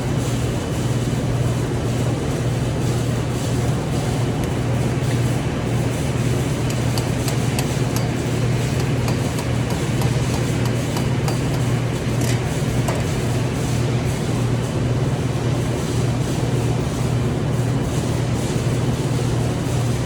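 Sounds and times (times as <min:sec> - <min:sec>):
welding machine humming: 0:00.0 - 0:20.0.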